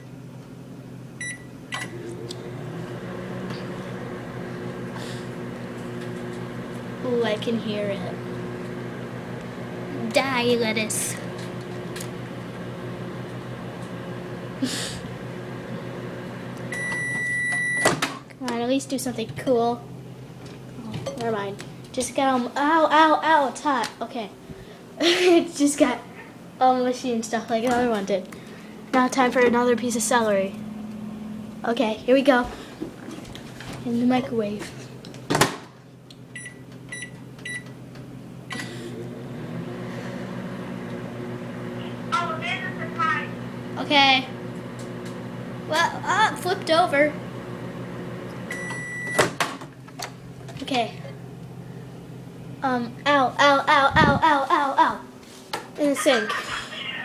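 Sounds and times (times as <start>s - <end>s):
microwave oven humming: 0.0s - 57.0s
microwave oven click: 1.2s - 2.5s.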